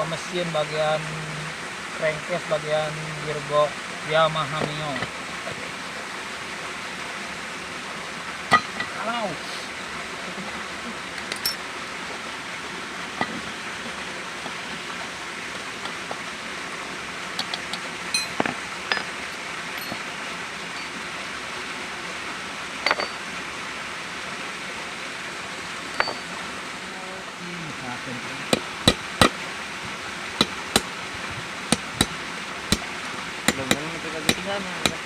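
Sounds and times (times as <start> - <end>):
steady background hiss: 0.0 - 35.0
metallic tool clinks on casing: 11.3 - 11.6, 18.2 - 19.0, 19.8 - 20.1, 22.9 - 23.2, 26.0 - 26.3.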